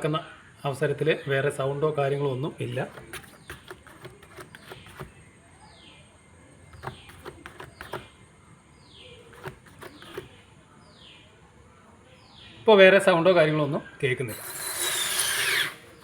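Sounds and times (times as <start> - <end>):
car wheel spinning: 2.6 - 5.2, 6.7 - 8.1, 9.2 - 10.4, 14.4 - 16.0.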